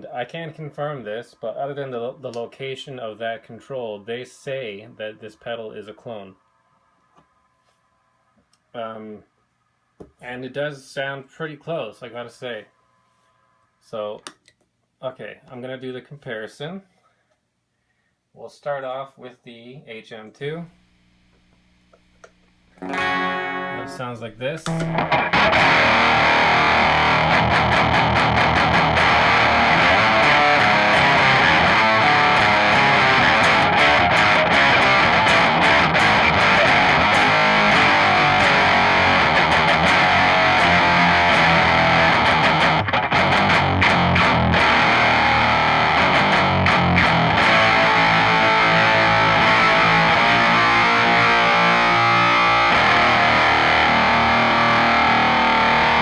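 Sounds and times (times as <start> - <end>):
distorted electric guitar riffing: 22.8 - 56.0.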